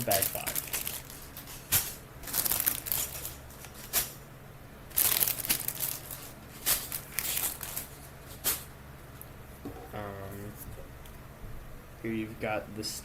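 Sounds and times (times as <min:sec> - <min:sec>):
plastic bags crinkling: 0:00.0 - 0:04.2, 0:04.9 - 0:08.6.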